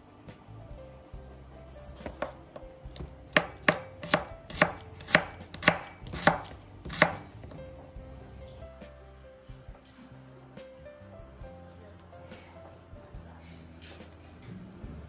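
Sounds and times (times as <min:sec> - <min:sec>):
knife chopping on cutting board: 0:02.1 - 0:07.6.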